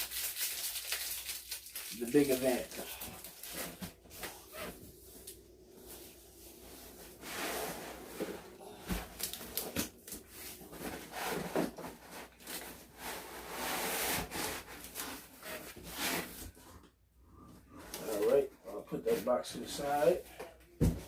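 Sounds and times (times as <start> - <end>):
cardboard and styrofoam scraping: 10.3 - 16.4.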